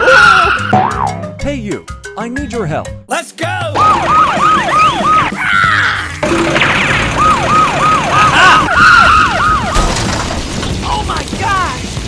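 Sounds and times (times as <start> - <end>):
background music: 0.0 - 8.2
siren wailing: 3.7 - 9.8.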